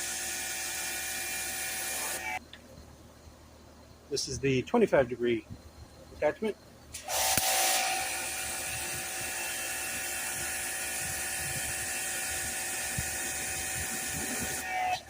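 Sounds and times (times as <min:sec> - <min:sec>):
pressure washer motor whine: 0:00.0 - 0:02.4, 0:06.9 - 0:15.0
water jet hissing: 0:07.0 - 0:15.0.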